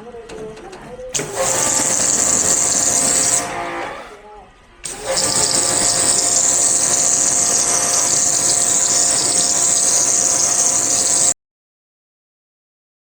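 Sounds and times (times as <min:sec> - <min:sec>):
machine hissing loudly: 0:01.2 - 0:04.2, 0:04.8 - 0:11.4
steady whining tones: 0:01.2 - 0:11.4.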